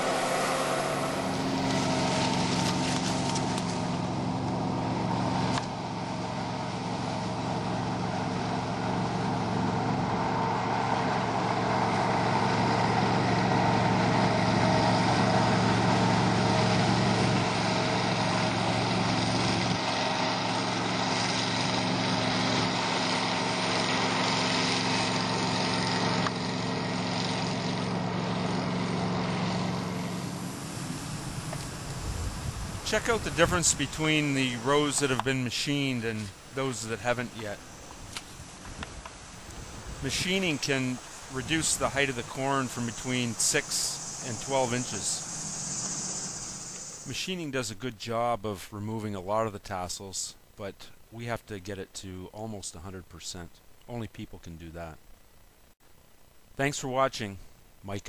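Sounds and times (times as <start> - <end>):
machine engine humming: 0.0 - 47.3.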